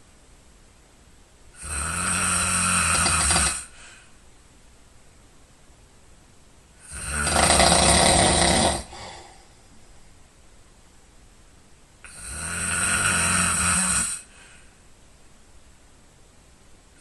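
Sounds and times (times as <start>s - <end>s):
person snoring loudly: 1.6s - 3.8s, 6.8s - 9.4s, 12.0s - 14.3s
quiet breathing: 2.1s - 4.3s, 7.6s - 10.3s, 12.9s - 15.0s.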